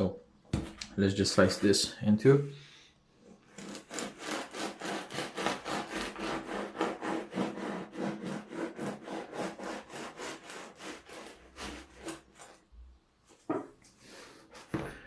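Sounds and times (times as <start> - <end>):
knife sawing through bread: 3.5 - 12.6.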